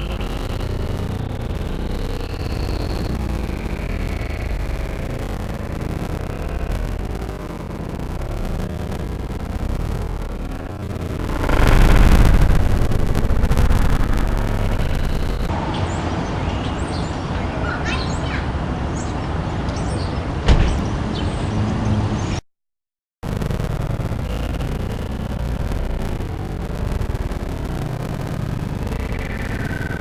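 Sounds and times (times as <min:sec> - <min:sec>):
street traffic noise: 0:15.5 - 0:22.4.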